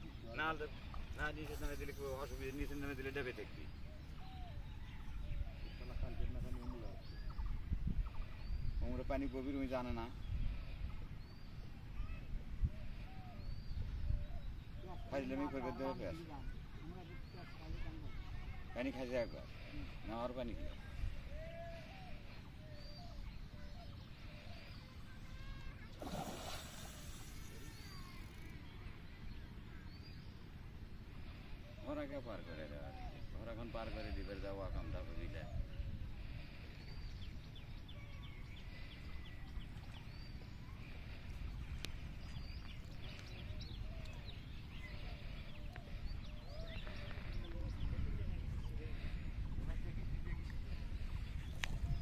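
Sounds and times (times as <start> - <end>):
small birds chirping: 0.0 - 52.0
water splash: 26.0 - 28.0.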